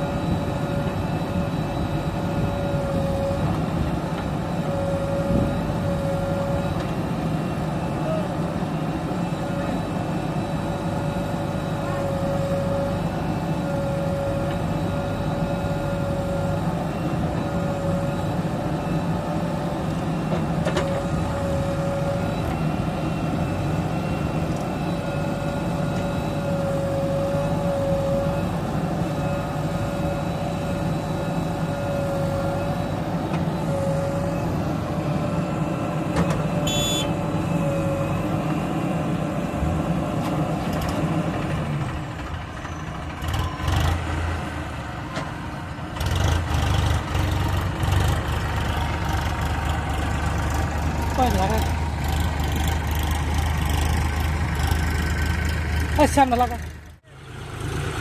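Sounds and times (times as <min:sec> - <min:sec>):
wavering whine: 0:00.0 - 0:41.2
heavy diesel machinery running: 0:00.0 - 0:58.0.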